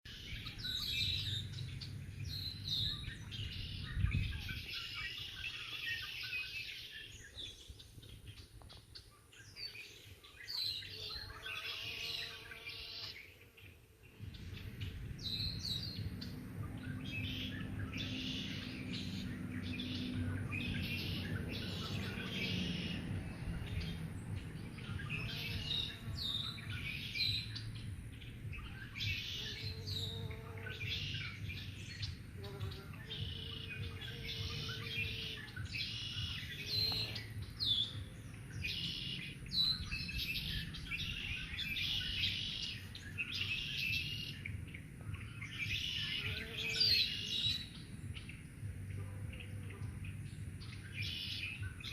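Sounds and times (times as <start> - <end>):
small birds chirping and singing: 0.1 - 51.9
bumblebees buzzing: 10.4 - 51.7.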